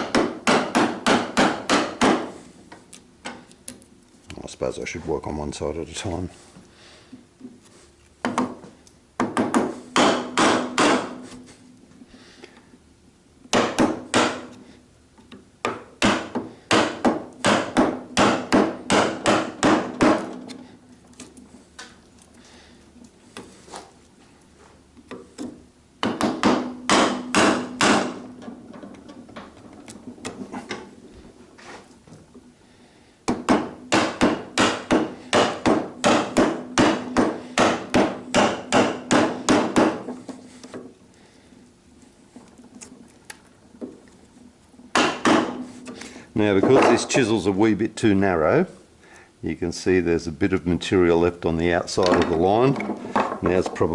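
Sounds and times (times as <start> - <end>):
mallet striking chisel into wood: 0.0 - 2.3, 9.2 - 11.2, 13.5 - 14.5, 15.6 - 20.4, 26.0 - 28.3, 33.3 - 40.2, 44.9 - 45.7.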